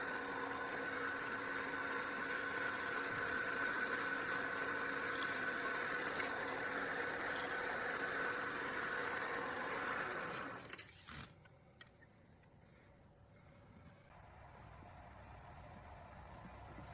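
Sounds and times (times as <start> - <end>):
motor whining: 0.0 - 10.7.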